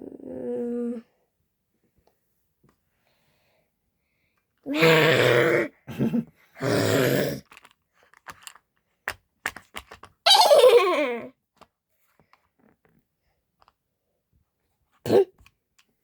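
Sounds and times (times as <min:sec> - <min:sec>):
groaning voice: 0:00.0 - 0:01.1, 0:04.7 - 0:05.8, 0:06.6 - 0:07.4.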